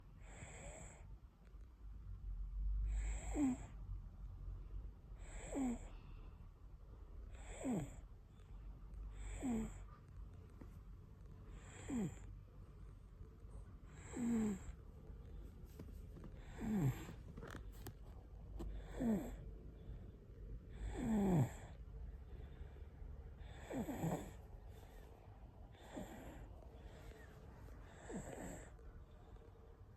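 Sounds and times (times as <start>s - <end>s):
baby snoring: 2.9s - 3.8s, 5.2s - 6.0s, 7.3s - 8.1s, 9.1s - 10.0s, 11.4s - 12.3s, 13.8s - 14.8s, 16.2s - 18.0s, 18.6s - 19.4s, 20.7s - 21.8s, 23.4s - 25.0s, 25.7s - 27.2s, 27.8s - 28.8s.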